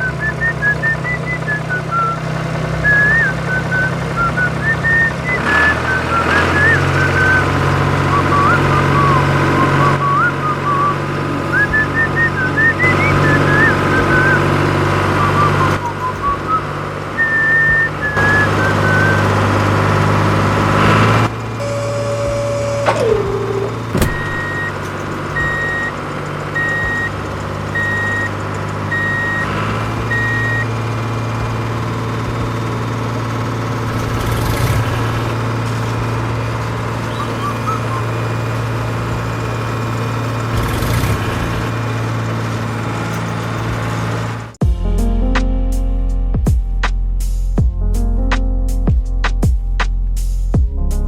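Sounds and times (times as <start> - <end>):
reversing beeps: 0.0 - 19.6, 21.6 - 30.8, 37.0 - 39.2
tractor engine humming: 0.0 - 46.6
tone sliding down in pitch: 2.8 - 19.7, 20.8 - 26.0.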